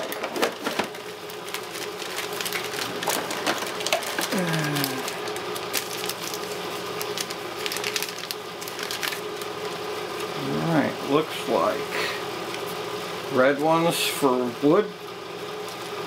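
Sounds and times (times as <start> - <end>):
packaging crinkling and rustling: 0.0 - 9.6.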